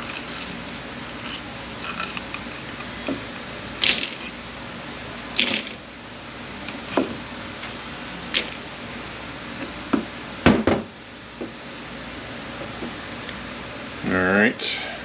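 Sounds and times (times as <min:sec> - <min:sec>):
metal tools clinking: 0:00.0 - 0:02.9, 0:03.7 - 0:04.4, 0:05.2 - 0:05.8, 0:08.3 - 0:08.6.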